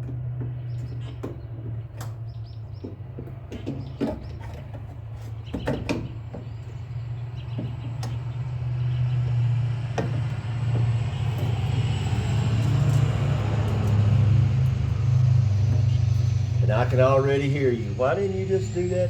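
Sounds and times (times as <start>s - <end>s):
vehicle engine rumbling: 0.0s - 19.0s.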